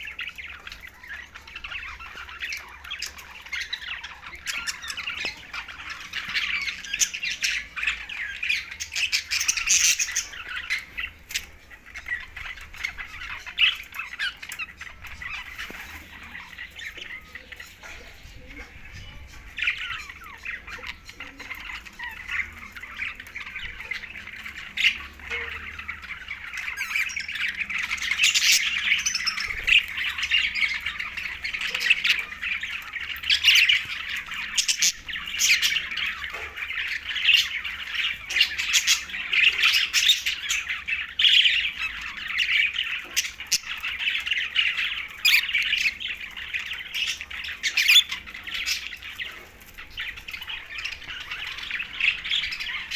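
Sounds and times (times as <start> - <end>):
budgerigars chattering: 0.0 - 52.9.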